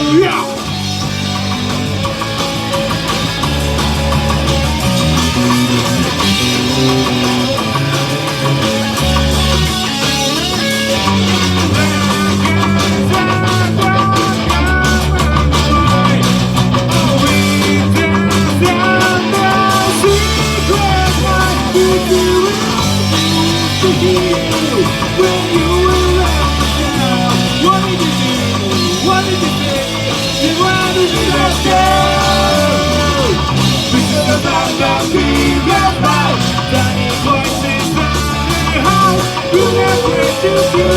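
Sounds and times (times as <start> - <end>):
rock music with guitar and bass: 0.0 - 40.9.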